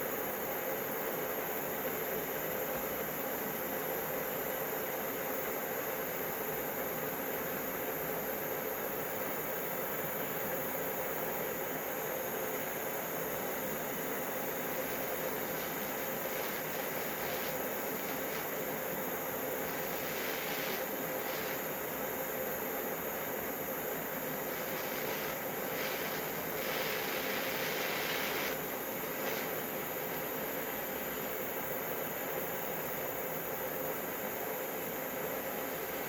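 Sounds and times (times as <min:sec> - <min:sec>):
gas torch flame hissing: 0:13.6 - 0:31.6.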